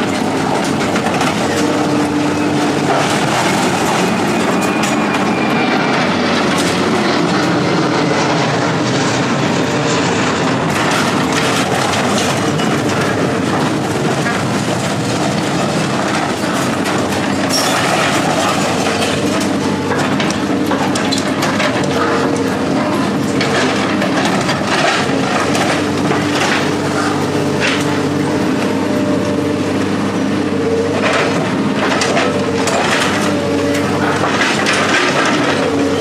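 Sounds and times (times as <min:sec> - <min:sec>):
machinery engine hum: 0:00.0 - 0:36.0
metal clanking and rattling: 0:10.0 - 0:29.7, 0:30.6 - 0:36.0.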